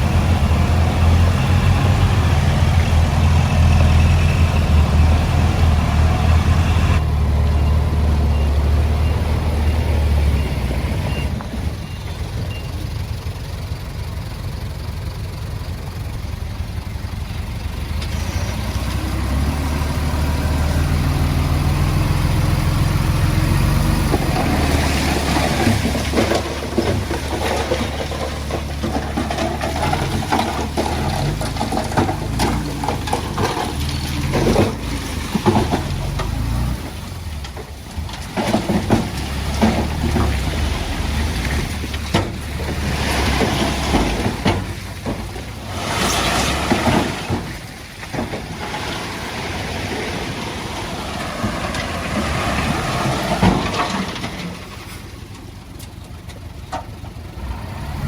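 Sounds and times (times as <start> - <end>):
bulldozer diesel engine running: 0.0 - 58.0
tracks clanking and scraping on stone: 23.5 - 57.2.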